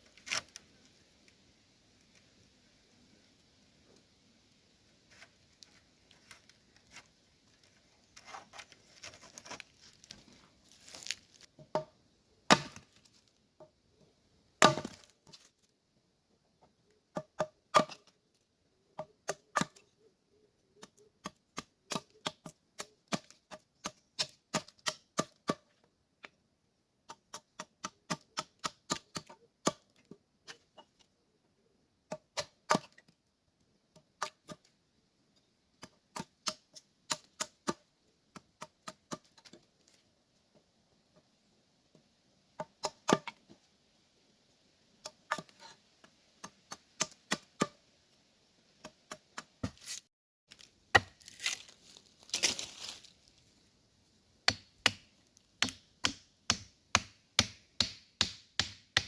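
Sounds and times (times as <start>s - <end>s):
rustling: 5.0s - 11.6s, 49.6s - 53.8s.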